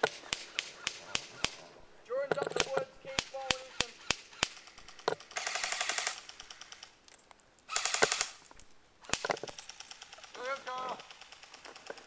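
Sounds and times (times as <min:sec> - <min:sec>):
airsoft gun bursts: 0:02.6 - 0:06.9, 0:07.7 - 0:08.4, 0:09.1 - 0:12.0.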